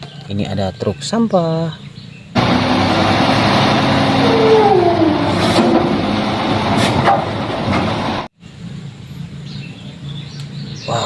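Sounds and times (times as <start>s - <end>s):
garbage truck engine hissing: 2.4s - 8.3s
falling whine: 2.4s - 9.1s.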